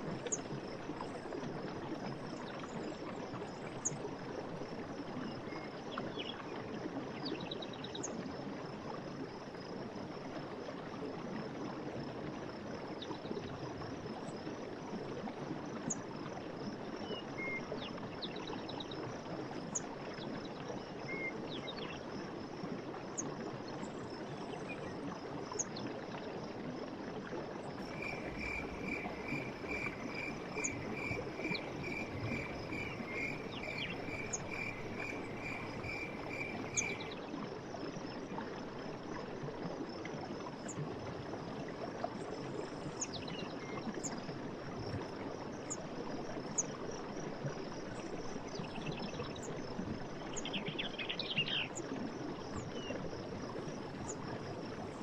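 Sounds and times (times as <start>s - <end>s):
stream water running: 0.0s - 55.0s
rapid evenly pulsed call: 27.8s - 37.2s.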